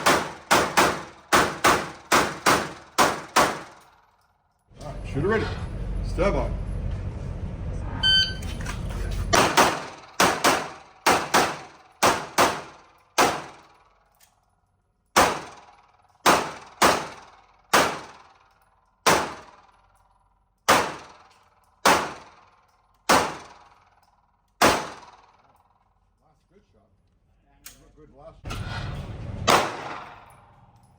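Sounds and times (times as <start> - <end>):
handgun shots: 0.0 - 4.0, 9.4 - 13.8, 15.2 - 18.2, 19.0 - 19.6, 20.7 - 22.4, 23.1 - 23.8, 24.6 - 25.4, 29.5 - 30.3
electronic timer beep: 8.0 - 8.5.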